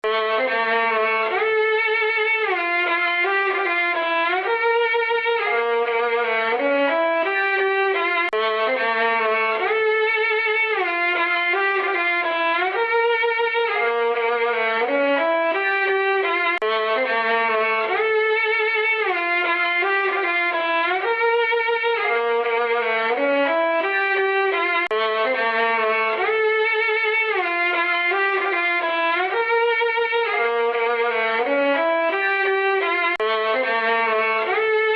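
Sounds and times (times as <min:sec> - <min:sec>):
sad solo violin melody: 0:00.0 - 0:34.9.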